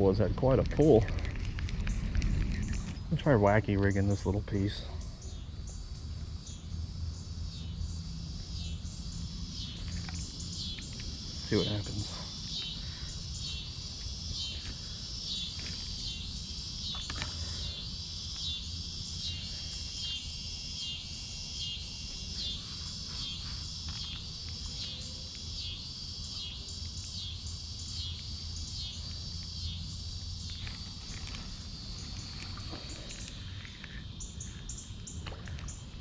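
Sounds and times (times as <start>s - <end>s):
insects calling in high-pitched pulses: 0.0s - 36.0s.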